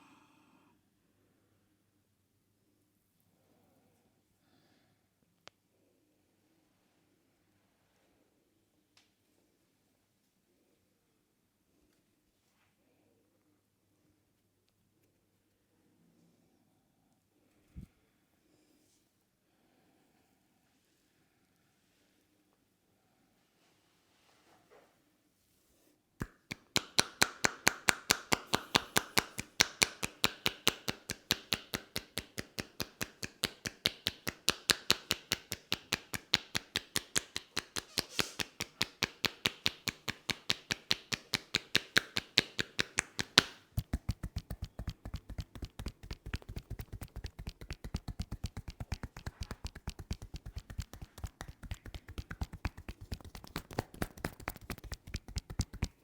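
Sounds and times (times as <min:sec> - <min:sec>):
hand slaps on head: 0:26.2 - 0:56.0.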